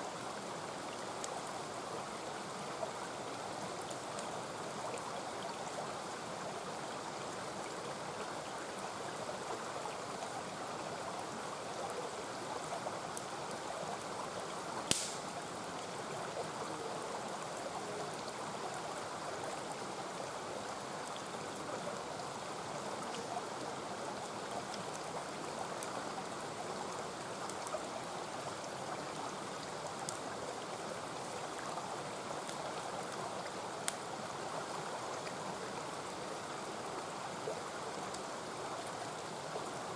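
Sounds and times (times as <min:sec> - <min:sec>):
wood fire crackling: 0:14.9 - 0:15.5.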